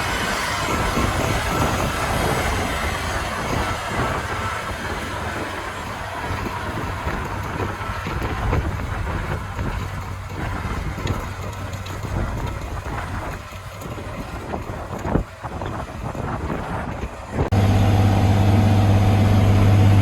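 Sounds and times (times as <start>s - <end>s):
tracked tractor engine under load: 0.0s - 20.0s.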